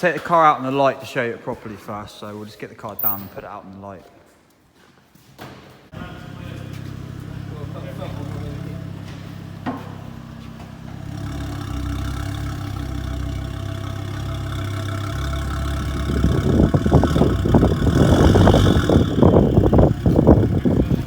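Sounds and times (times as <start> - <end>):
car engine running: 6.0 - 21.0.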